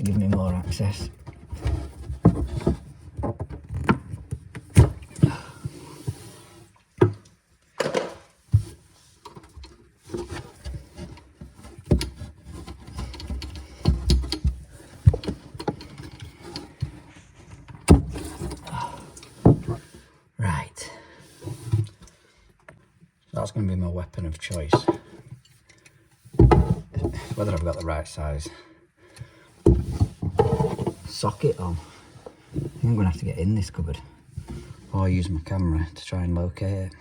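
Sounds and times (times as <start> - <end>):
hand tools clicking and knocking: 11.8 - 17.0.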